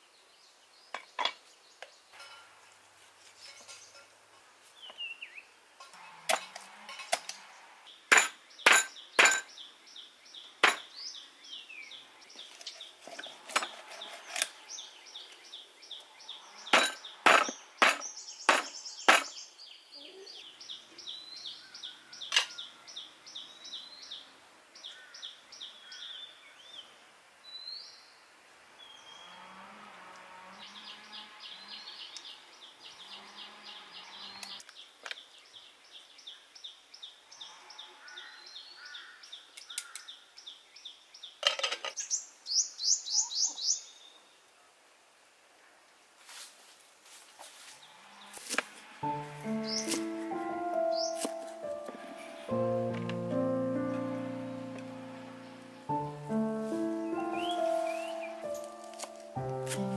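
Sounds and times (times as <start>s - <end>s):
utensils and dishes clinking: 2.2s - 2.6s
bird chirping trill: 49.0s - 59.9s.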